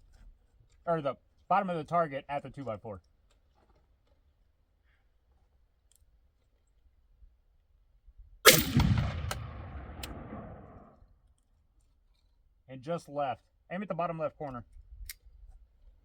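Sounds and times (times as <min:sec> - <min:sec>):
rifle shot echoing: 0:08.5 - 0:10.9.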